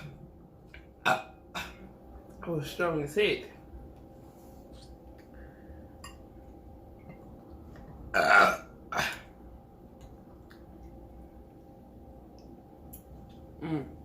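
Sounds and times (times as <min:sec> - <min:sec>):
woman burping: 0:01.0 - 0:01.8, 0:08.1 - 0:09.3, 0:13.6 - 0:14.0.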